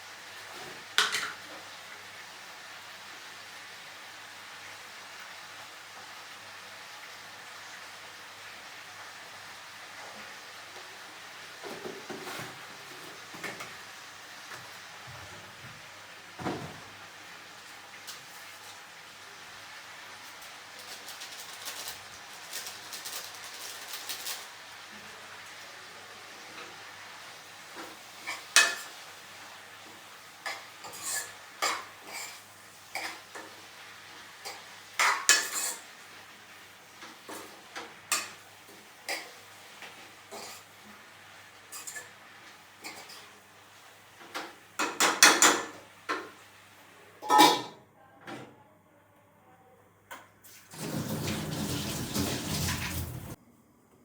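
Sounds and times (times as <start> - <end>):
dishes and cutlery clattering: 1.0 - 1.4, 41.7 - 42.2, 44.3 - 45.8, 47.2 - 47.8.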